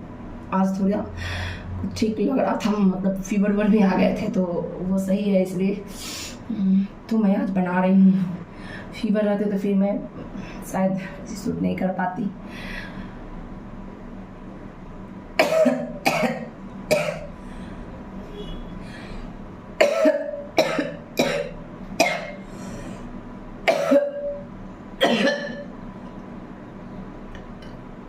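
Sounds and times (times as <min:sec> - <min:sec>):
woman coughing: 0:15.4 - 0:17.3, 0:19.8 - 0:22.4, 0:23.7 - 0:24.4, 0:25.0 - 0:25.7.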